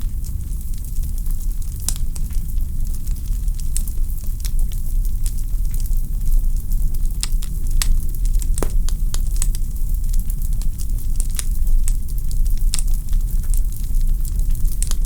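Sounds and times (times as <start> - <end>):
low fire rumble: 0.0 - 15.0
wood fire crackling: 7.2 - 15.0.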